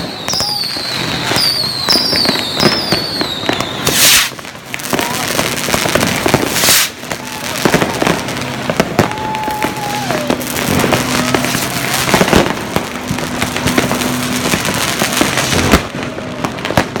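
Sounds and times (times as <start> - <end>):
falling firework whistle: 0.0 - 17.0
fireworks bangs and crackling: 0.0 - 17.0.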